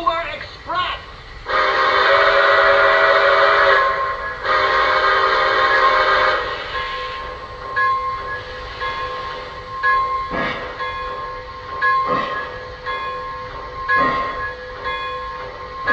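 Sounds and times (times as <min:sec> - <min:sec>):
steam locomotive chime whistle: 0:00.0 - 0:15.9.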